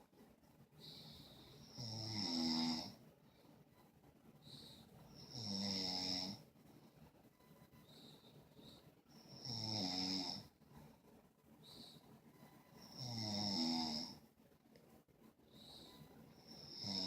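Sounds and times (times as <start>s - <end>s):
quiet breathing: 0.0s - 17.0s
person snoring: 1.0s - 3.0s, 4.6s - 6.4s, 9.2s - 10.5s, 12.8s - 14.2s, 16.4s - 17.0s.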